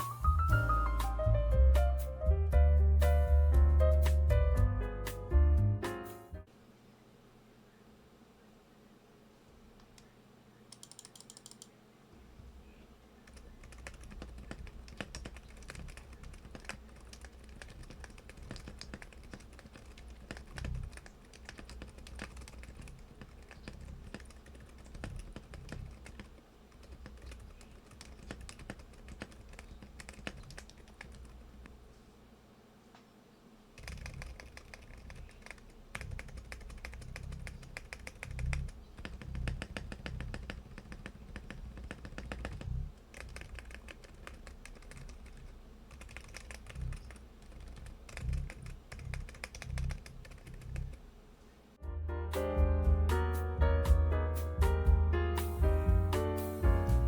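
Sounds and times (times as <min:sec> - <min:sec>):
mechanical keyboard typing: 0:10.7 - 0:11.7, 0:13.3 - 0:31.4, 0:33.8 - 0:51.0.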